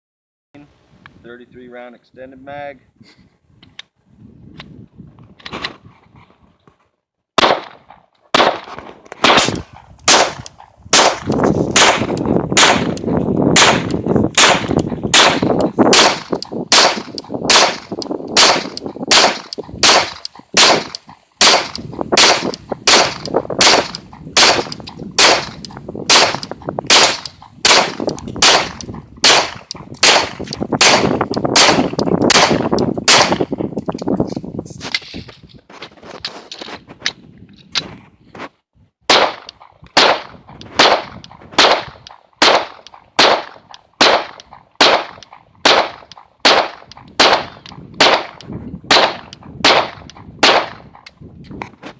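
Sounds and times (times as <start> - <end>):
pistol shots with echo: 7.4 - 33.5, 39.1 - 50.9.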